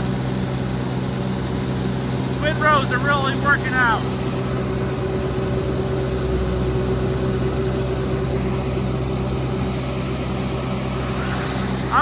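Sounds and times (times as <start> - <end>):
harvester engine humming: 2.2 - 5.8, 10.7 - 12.0.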